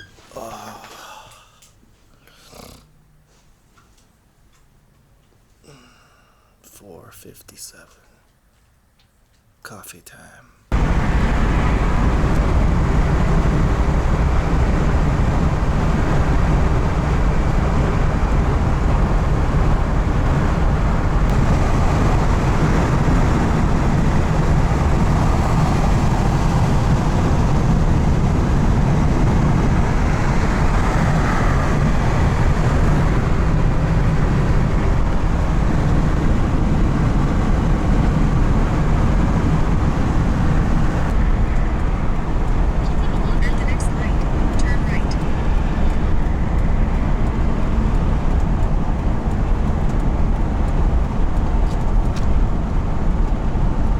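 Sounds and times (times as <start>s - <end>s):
tyres and engine rushing: 0.0s - 0.8s, 10.7s - 53.9s
vehicle road noise: 10.7s - 53.9s.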